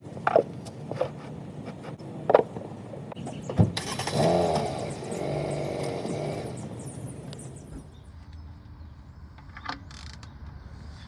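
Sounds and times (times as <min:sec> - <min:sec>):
car engine starting and idling: 0:00.0 - 0:08.0.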